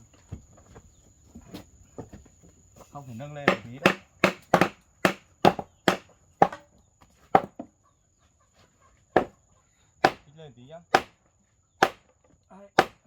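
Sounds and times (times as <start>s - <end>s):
hammer striking timber: 3.4s - 6.6s, 7.3s - 7.7s, 10.0s - 10.3s, 10.9s - 11.2s, 11.8s - 12.1s, 12.8s - 13.0s.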